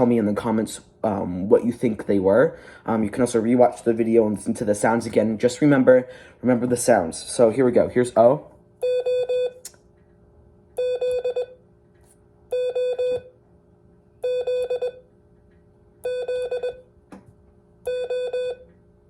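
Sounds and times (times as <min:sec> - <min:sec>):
morse code beeps: 0:08.8 - 0:09.6, 0:10.8 - 0:11.6, 0:12.5 - 0:13.3, 0:14.2 - 0:15.0, 0:16.0 - 0:16.8, 0:17.9 - 0:18.6.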